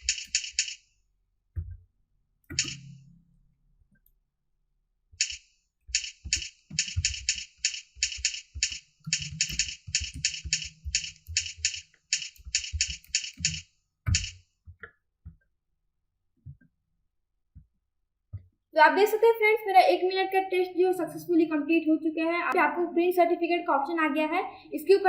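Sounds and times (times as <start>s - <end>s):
keyboard keystrokes: 0.0s - 0.8s, 2.5s - 2.9s, 5.2s - 14.4s.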